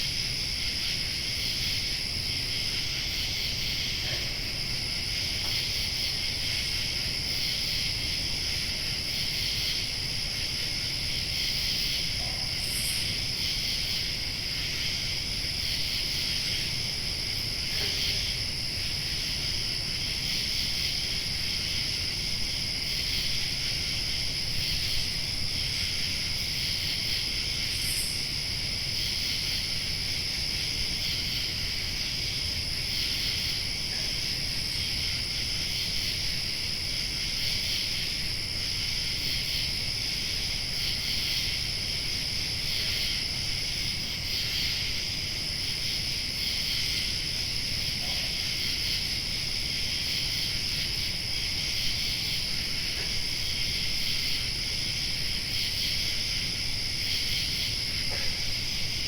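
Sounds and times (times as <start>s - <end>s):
crickets chirping: 0.0s - 59.0s.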